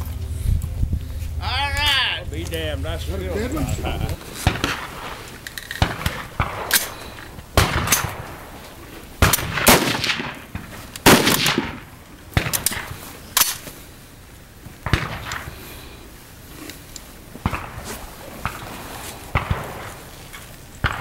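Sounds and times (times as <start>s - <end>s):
rifle shots with echo: 4.3s - 13.6s, 14.8s - 15.7s, 17.4s - 21.0s.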